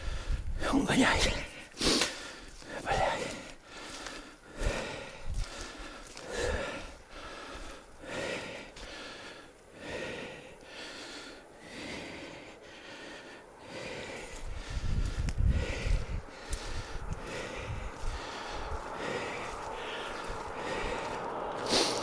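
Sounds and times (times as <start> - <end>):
person breathing heavily: 0.0 - 22.0.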